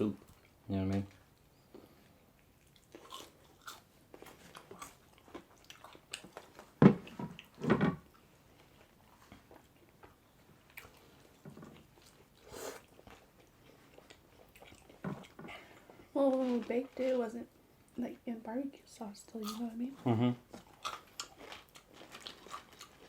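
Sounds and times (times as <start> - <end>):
person chewing food: 1.3 - 15.9, 19.4 - 23.0.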